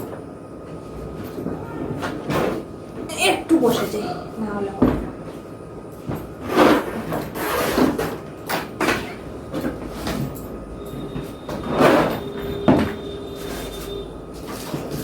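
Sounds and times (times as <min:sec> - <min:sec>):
suitcases scraping and rustling: 0:06.0 - 0:15.0.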